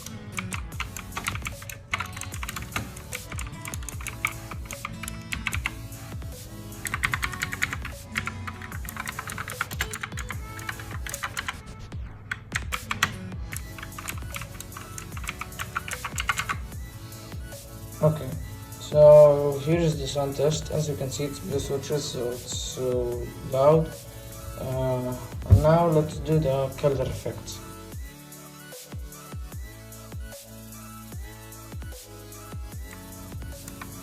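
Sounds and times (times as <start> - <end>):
fast mechanical keyboard typing: 0.0 - 5.8, 6.8 - 11.6, 12.3 - 16.6
background music: 0.0 - 34.0.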